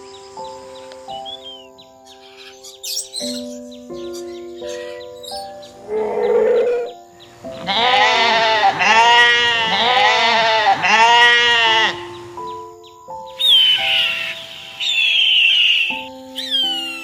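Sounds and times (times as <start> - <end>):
soft background music: 0.0 - 17.0
animal long wavering call: 5.8 - 7.0, 13.4 - 17.0.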